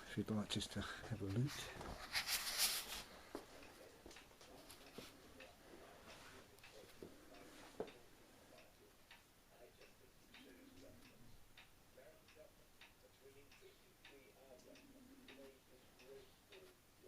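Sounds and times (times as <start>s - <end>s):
faint regular ticking: 0.0s - 1.9s, 2.8s - 17.0s
faint distant talk: 2.9s - 17.0s.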